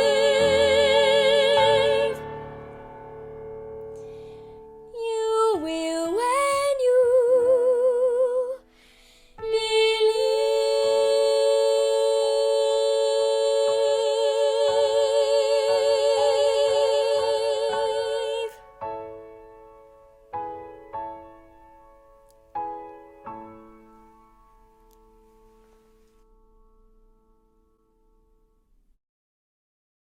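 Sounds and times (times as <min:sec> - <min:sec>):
women singing: 0:00.0 - 0:02.2, 0:05.0 - 0:08.6, 0:09.4 - 0:18.6
piano accompaniment: 0:00.0 - 0:28.8.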